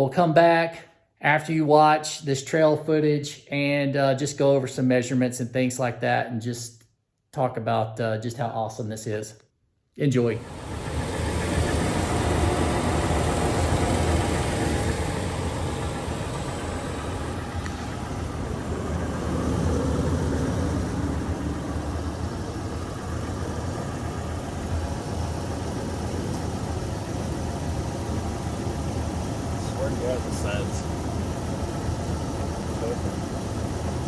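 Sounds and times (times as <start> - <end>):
vehicle engine idling: 10.4 - 34.0.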